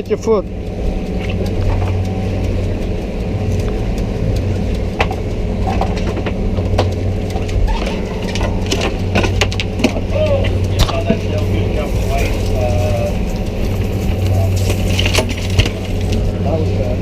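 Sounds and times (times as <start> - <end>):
boat engine running: 0.0 - 17.0
knocks and clatter on deck: 5.0 - 11.2.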